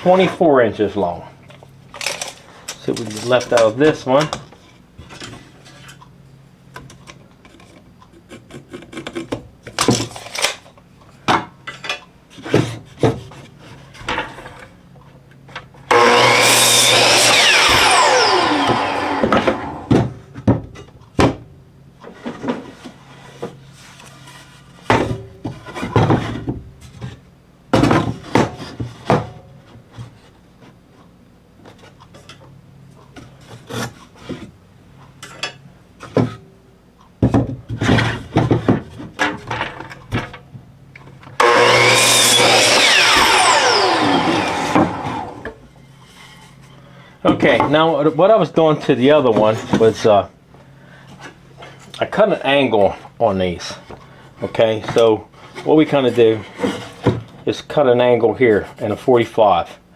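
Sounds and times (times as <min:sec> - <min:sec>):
miter saw cutting wood: 0:15.9 - 0:20.0, 0:41.4 - 0:45.6.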